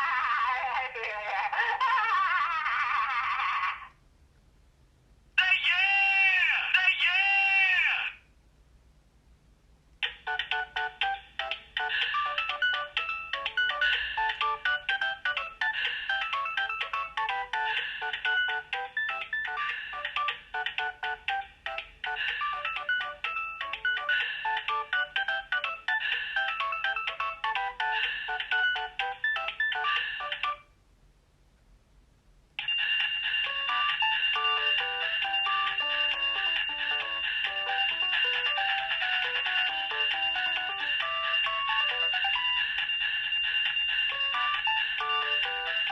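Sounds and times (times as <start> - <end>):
mobile phone ringtone melody: 10.0 - 30.7, 32.6 - 45.9.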